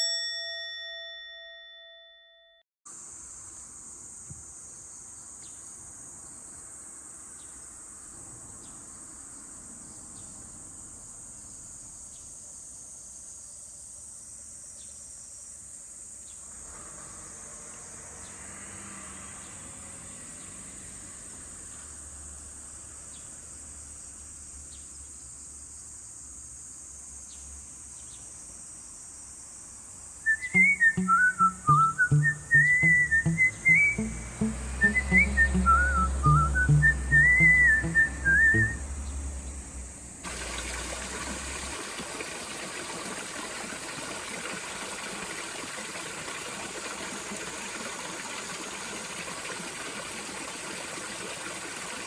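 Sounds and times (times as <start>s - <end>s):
whistled tune: 30.3s - 38.9s.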